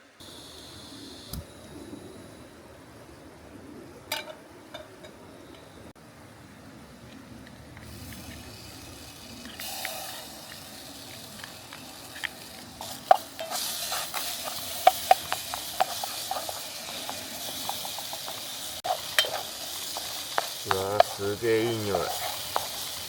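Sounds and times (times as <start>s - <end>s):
food sizzling in a pan: 7.9s - 23.0s
utensil clicking against pan: 12.2s - 23.0s.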